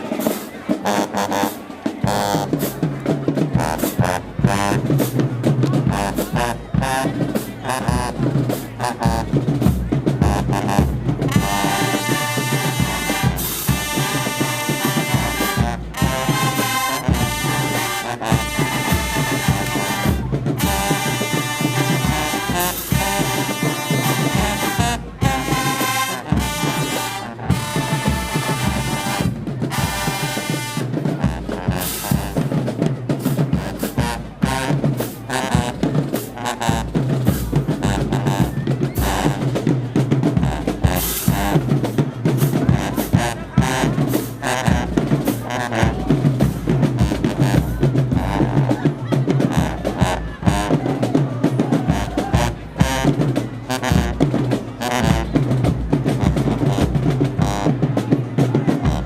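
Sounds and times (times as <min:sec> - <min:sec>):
brass section playing chords: 0:00.0 - 0:02.8, 0:03.4 - 0:32.6, 0:40.4 - 0:48.8, 0:51.8 - 0:55.5
snare and bass drum cadence: 0:00.0 - 0:59.0.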